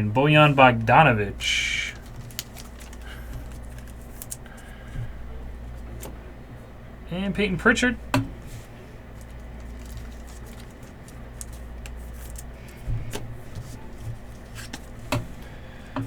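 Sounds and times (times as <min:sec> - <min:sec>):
cards clicking and tapping: 0:01.9 - 0:04.7, 0:09.2 - 0:15.3.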